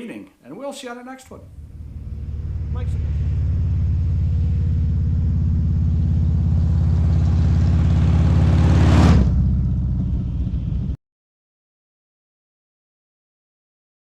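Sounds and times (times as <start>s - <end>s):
motorcycle engine running: 1.4s - 11.0s.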